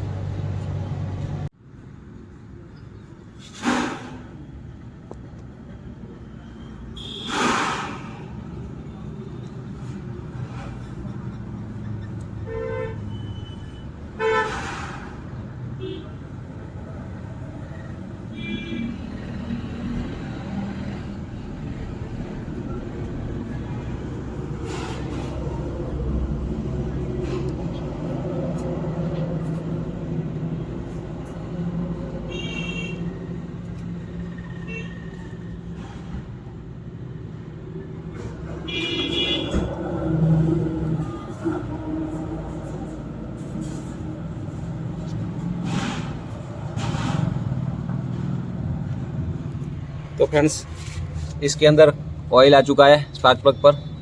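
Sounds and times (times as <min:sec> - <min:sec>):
engine running low hum: 0:00.0 - 0:01.5, 0:19.5 - 0:32.4
low engine hum: 0:00.0 - 0:01.5
vehicle horn toots: 0:07.0 - 0:07.8, 0:12.5 - 0:14.8, 0:18.3 - 0:19.0, 0:32.3 - 0:33.1, 0:38.6 - 0:39.8.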